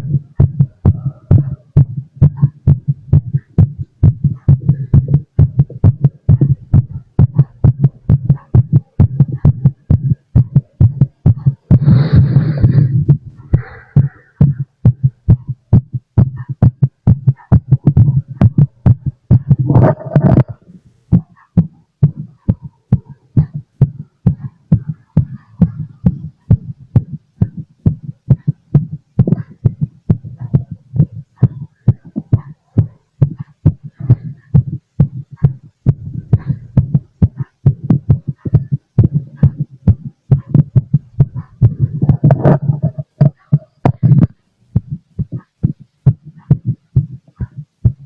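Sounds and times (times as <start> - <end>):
heartbeat through stethoscope: 0.0 - 48.0
scratchy noise: 10.5 - 14.6, 17.8 - 21.4, 32.0 - 44.4.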